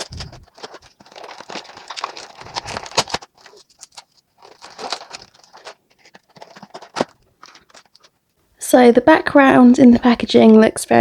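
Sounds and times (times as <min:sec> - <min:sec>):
packaging crinkling: 0:00.0 - 0:08.4.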